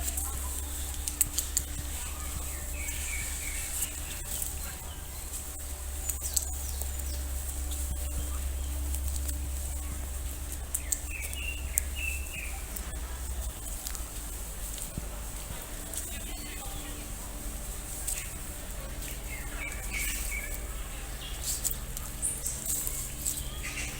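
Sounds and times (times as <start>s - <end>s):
birds chirping: 0.0s - 23.9s
low rumble: 0.0s - 23.9s
sharp clicks: 5.6s - 17.0s.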